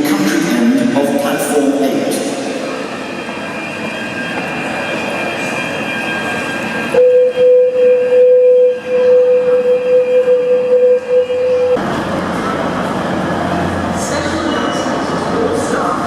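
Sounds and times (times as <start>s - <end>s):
railway station background noise: 0.0s - 16.0s
trains: 0.0s - 16.0s
single-note alarm tone: 3.5s - 11.8s.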